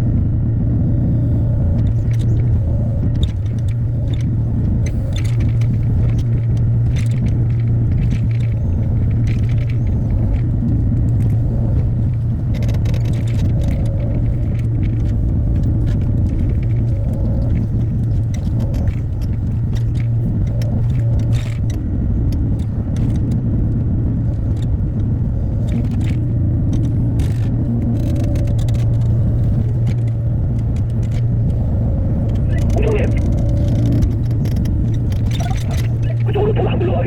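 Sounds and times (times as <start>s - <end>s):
excavator diesel engine running: 32.0s - 37.0s.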